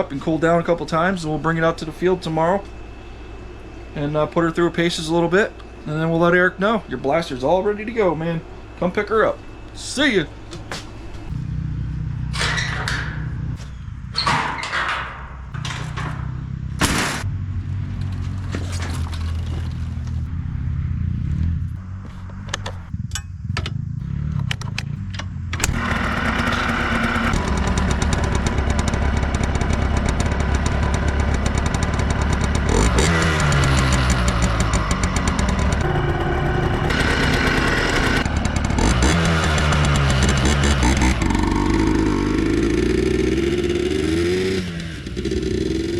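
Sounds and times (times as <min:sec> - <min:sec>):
two-stroke engine running: 0:19.8 - 0:45.9.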